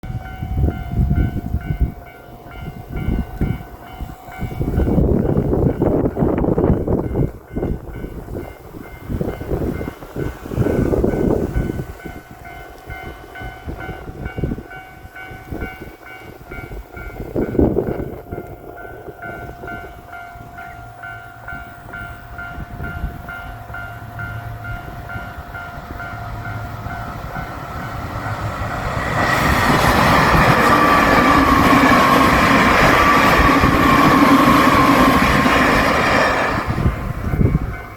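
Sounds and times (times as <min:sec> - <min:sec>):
crossing bell clanging: 0:00.0 - 0:37.9
train passing at speed: 0:00.0 - 0:37.9.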